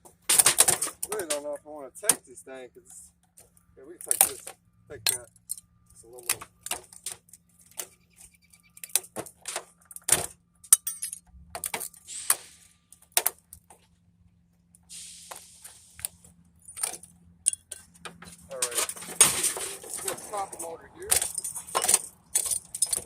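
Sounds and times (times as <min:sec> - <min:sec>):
small metal parts clinking: 0:02.8 - 0:13.6, 0:16.6 - 0:23.0.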